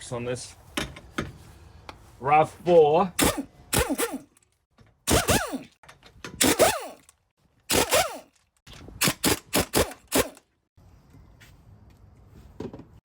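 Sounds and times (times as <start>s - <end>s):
impact wrench bursts: 3.2s - 4.4s, 5.0s - 8.4s, 9.0s - 10.5s.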